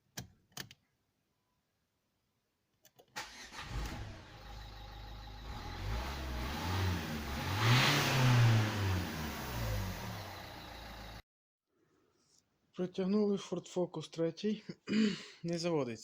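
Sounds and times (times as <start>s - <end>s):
click: 2.8s - 3.2s
car engine cranking without starting: 3.2s - 11.2s.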